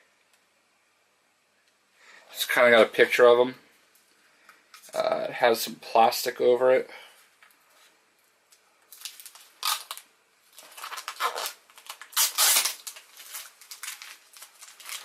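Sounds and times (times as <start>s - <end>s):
plastic film crinkling: 8.9s - 15.0s.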